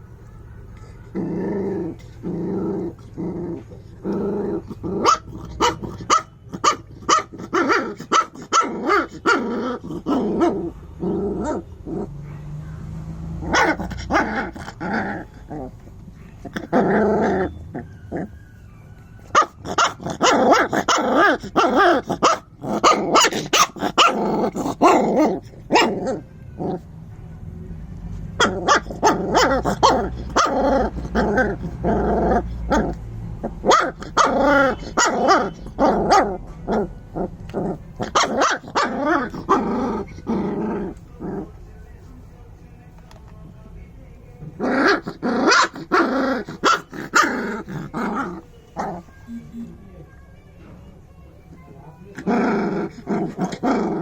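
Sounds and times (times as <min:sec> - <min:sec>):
puppy growling: 0:00.8 - 0:27.0, 0:28.3 - 0:41.8, 0:44.4 - 0:49.4, 0:52.1 - 0:54.0
puppy barking: 0:04.7 - 0:26.9, 0:28.3 - 0:36.9, 0:38.0 - 0:40.3, 0:44.6 - 0:49.4.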